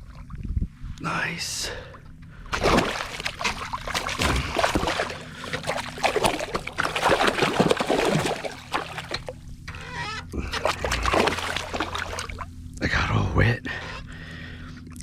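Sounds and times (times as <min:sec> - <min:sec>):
water splashing and sloshing: 0:00.0 - 0:00.6, 0:02.5 - 0:12.8.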